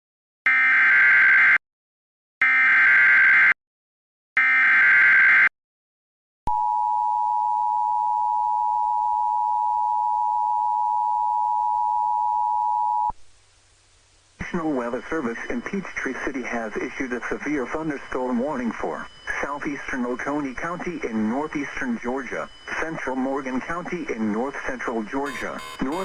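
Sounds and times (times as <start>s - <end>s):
buzzy data warble: 25.2s - 26.0s
two-tone attention signal: 25.2s - 26.0s.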